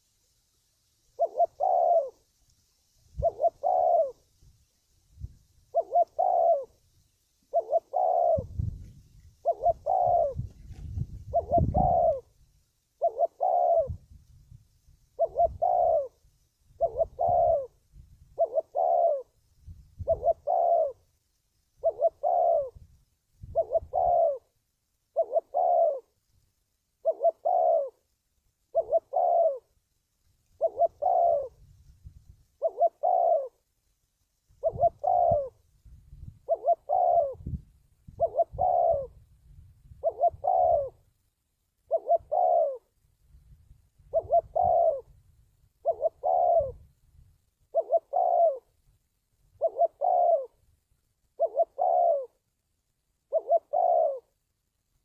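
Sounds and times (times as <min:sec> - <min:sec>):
dove cooing: 0:01.1 - 0:02.3, 0:03.1 - 0:04.3, 0:05.7 - 0:06.8, 0:07.4 - 0:12.4, 0:13.0 - 0:14.1, 0:15.1 - 0:19.4, 0:20.0 - 0:21.1, 0:21.8 - 0:26.2, 0:27.0 - 0:28.1, 0:28.7 - 0:29.8, 0:30.5 - 0:31.7, 0:32.6 - 0:33.6, 0:34.5 - 0:35.6, 0:36.2 - 0:41.1, 0:41.8 - 0:43.0, 0:44.0 - 0:45.2, 0:45.8 - 0:46.9, 0:47.7 - 0:48.8, 0:49.5 - 0:50.6, 0:51.2 - 0:52.4, 0:53.2 - 0:54.4.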